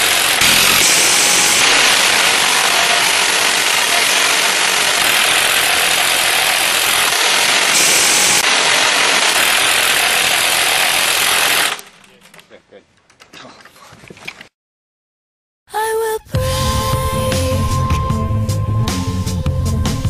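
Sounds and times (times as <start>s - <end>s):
airsoft minigun firing: 0.0s - 12.1s.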